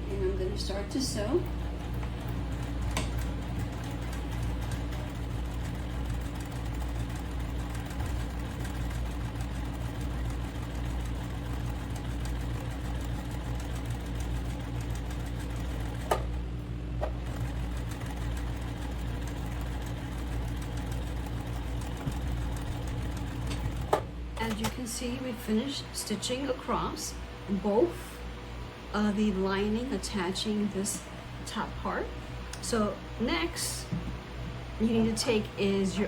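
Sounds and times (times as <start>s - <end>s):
sewing machine running: 0.2s - 24.6s.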